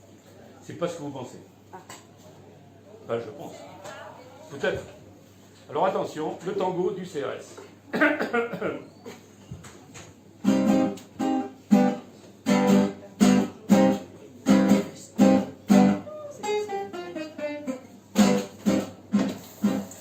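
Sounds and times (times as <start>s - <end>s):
guitar strumming chords: 10.4s - 20.0s.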